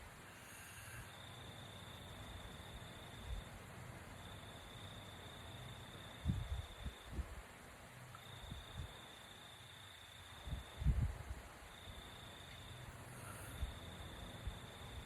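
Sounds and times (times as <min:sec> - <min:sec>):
person snoring: 0:00.3 - 0:01.2.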